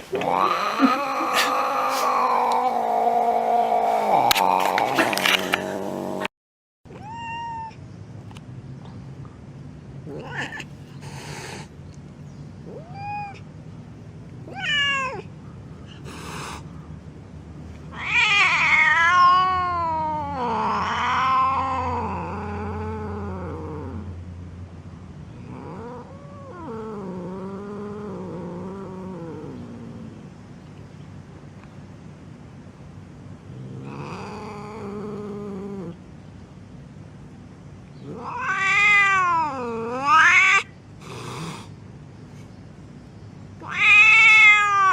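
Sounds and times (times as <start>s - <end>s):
cat growling: 0.0s - 6.3s, 10.0s - 11.7s, 17.9s - 24.2s, 25.3s - 30.3s, 33.4s - 36.0s, 38.0s - 41.8s, 43.6s - 44.9s
cat hissing: 0.0s - 6.3s, 10.1s - 11.8s, 14.5s - 16.8s, 17.9s - 24.1s, 33.5s - 36.0s, 38.0s - 42.5s, 43.6s - 44.9s
cat meowing: 0.0s - 6.3s, 6.9s - 7.8s, 12.7s - 13.4s, 14.5s - 15.3s, 17.9s - 23.6s, 38.0s - 40.8s, 43.6s - 44.9s
cat yowling: 0.0s - 6.3s, 6.9s - 7.8s, 12.7s - 13.4s, 14.5s - 15.3s, 17.9s - 24.0s, 38.0s - 40.8s, 43.6s - 44.9s.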